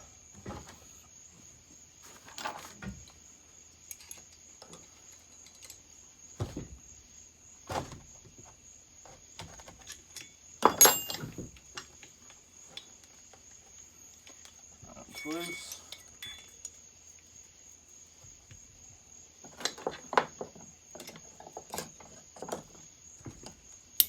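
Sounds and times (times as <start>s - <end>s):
metal hand tools clinking: 10.1s - 11.4s, 15.0s - 16.8s.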